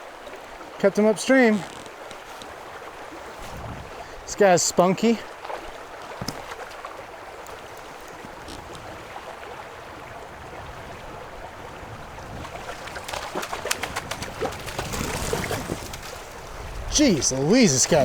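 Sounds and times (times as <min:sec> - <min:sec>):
river water running: 0:00.0 - 0:18.0
fish splashing at the surface: 0:12.4 - 0:16.4.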